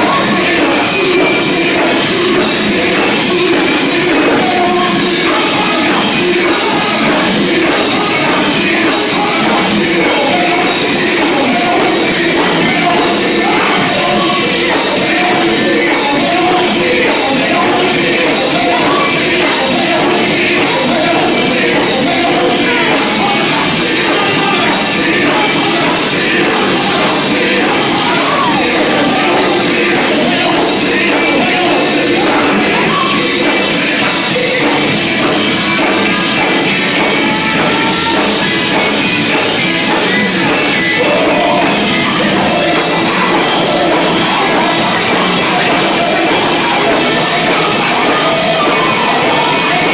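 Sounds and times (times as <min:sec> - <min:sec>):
full band playing: 0:00.0 - 0:49.9
gospel group singing: 0:00.0 - 0:49.9.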